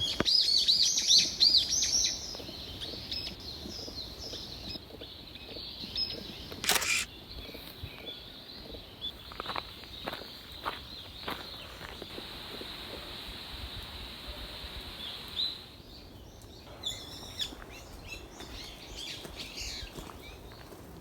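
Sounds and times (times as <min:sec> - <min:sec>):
birds chirping: 0:00.0 - 0:13.3, 0:14.1 - 0:20.7
outdoor background hiss: 0:00.0 - 0:20.8
high-pitched hiss: 0:11.8 - 0:15.8.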